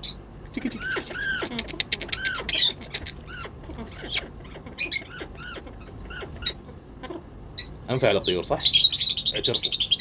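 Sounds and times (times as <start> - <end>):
parrot chirping: 0.0 - 10.0
parrot squawking: 0.0 - 10.0.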